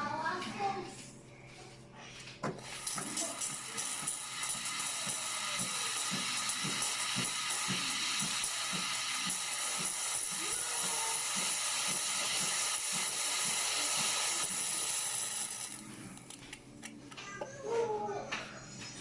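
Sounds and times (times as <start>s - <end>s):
espresso machine steam wand hissing: 2.5s - 15.9s.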